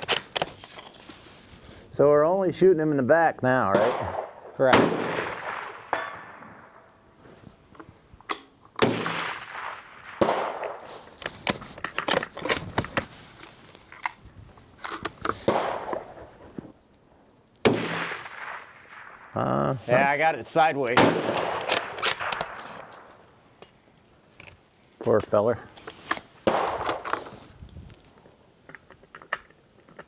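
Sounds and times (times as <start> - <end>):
gunshots with echo: 3.8 - 6.6, 17.7 - 19.4, 20.9 - 22.5
small metallic clicks and clanks: 11.2 - 15.4, 21.3 - 26.2, 28.2 - 30.0.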